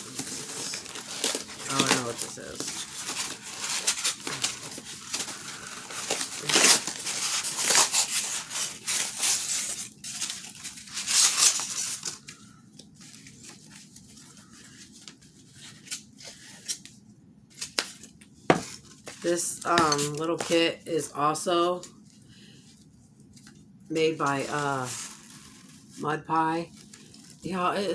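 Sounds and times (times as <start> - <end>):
packaging torn and crinkled: 0.0 - 16.9.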